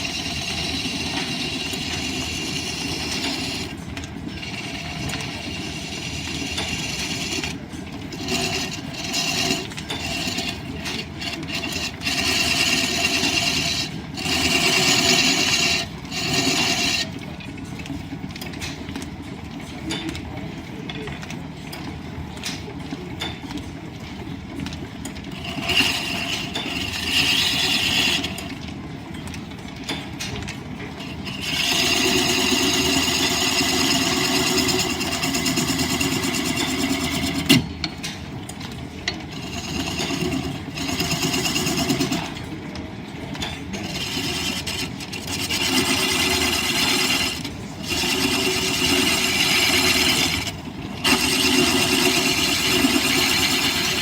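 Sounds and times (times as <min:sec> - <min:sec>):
tool cutting spinning wood: 0:00.0 - 0:17.2, 0:25.3 - 0:28.6, 0:31.0 - 0:37.7, 0:39.3 - 0:42.5, 0:43.4 - 0:54.0
wood lathe running: 0:00.0 - 0:17.3, 0:25.3 - 0:28.6, 0:31.0 - 0:37.6, 0:39.3 - 0:42.5, 0:43.6 - 0:54.0.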